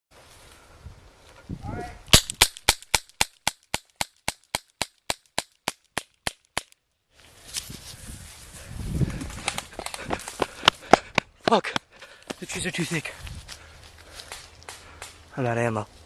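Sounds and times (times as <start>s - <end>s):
outdoor rustling: 0.1s - 16.0s
airsoft gun firing sharp cracks: 2.1s - 6.8s.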